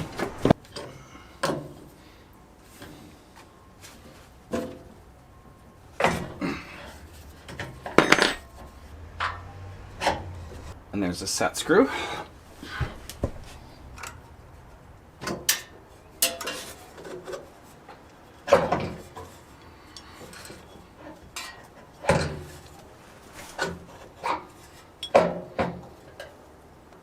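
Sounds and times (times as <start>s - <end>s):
hand tools clinking on metal: 7.5s - 10.1s, 25.0s - 25.3s.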